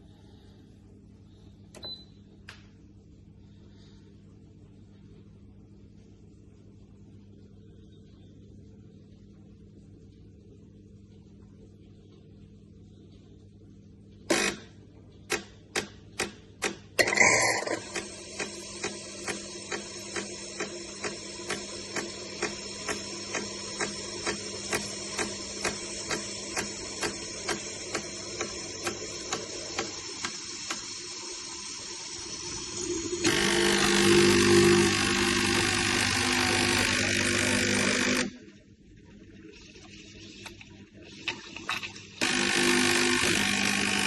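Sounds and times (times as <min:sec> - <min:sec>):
espresso machine pump humming: 0:17.0 - 0:38.4, 0:39.1 - 0:44.0
loud buzz: 0:32.0 - 0:38.4.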